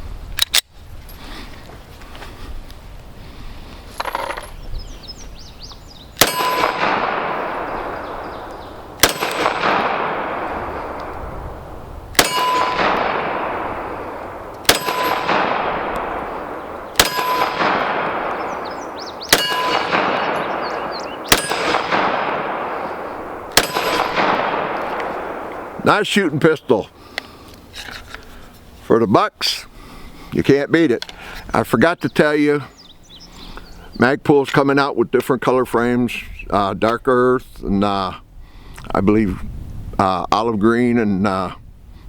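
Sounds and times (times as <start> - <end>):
pistol shots with echo: 6.2 - 11.2, 12.1 - 26.2.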